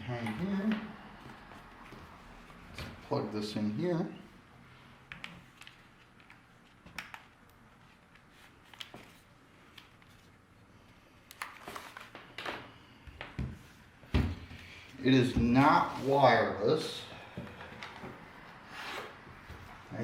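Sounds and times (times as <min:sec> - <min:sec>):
cable clicks and rustles: 0:05.1 - 0:10.4.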